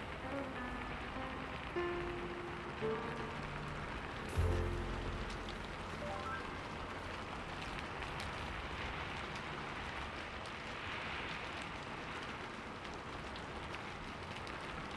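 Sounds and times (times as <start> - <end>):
wood fire crackling: 0.0 - 14.9.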